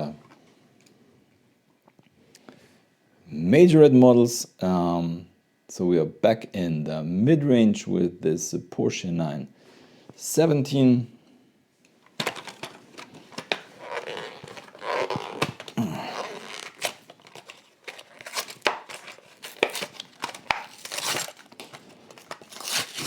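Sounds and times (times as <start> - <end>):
packaging crinkling and tearing: 12.1 - 23.0.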